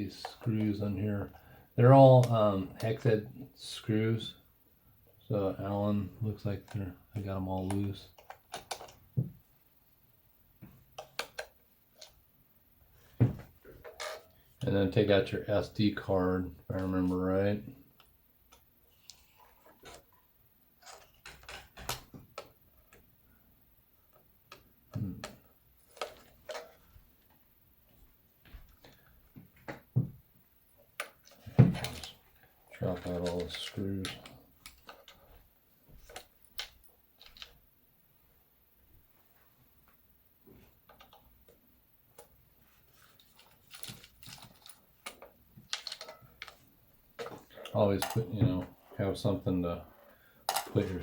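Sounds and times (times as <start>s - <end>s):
plastic and metal parts clicking: 6.6s - 9.0s, 32.8s - 35.3s, 43.0s - 48.3s
small metal screws rattling: 36.0s - 37.6s, 42.9s - 46.6s.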